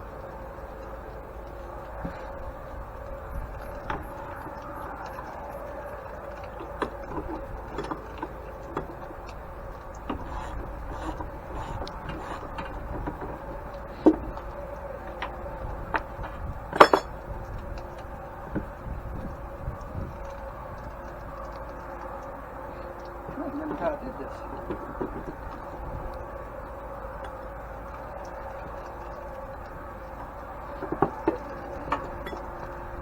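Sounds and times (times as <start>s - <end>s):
faint steady hum: 0.0s - 33.0s
metal tools clinking and knocking: 16.7s - 17.1s, 32.2s - 32.4s.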